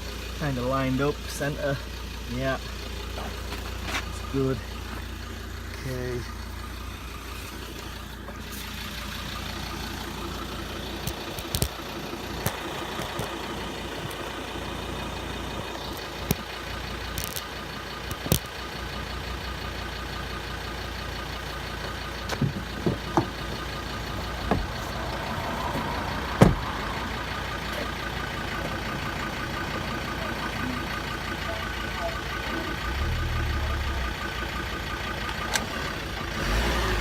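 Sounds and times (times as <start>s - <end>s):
vehicle engine running slowly: 0.0s - 37.0s
sharp knocks and thump: 22.3s - 23.4s, 24.5s - 24.8s, 26.4s - 26.6s.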